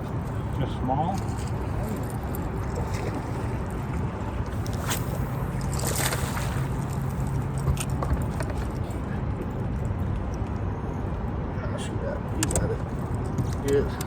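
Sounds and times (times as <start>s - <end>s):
water: 0.0s - 14.0s
boat motor humming: 1.5s - 14.0s.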